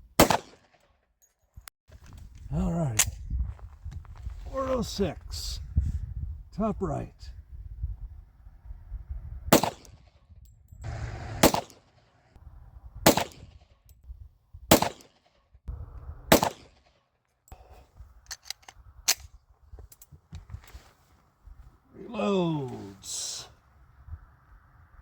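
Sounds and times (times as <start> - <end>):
pistol shots: 0.2 - 0.7, 9.5 - 10.0, 11.2 - 12.2, 13.1 - 13.5, 14.7 - 15.2, 16.3 - 16.9.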